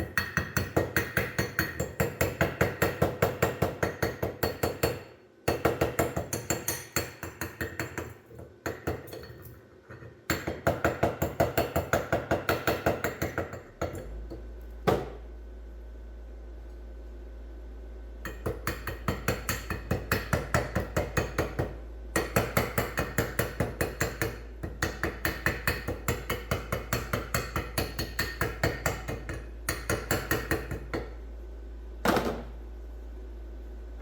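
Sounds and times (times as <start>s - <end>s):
rapid hammering on metal: 0.0s - 9.1s, 10.3s - 14.0s, 18.2s - 31.2s.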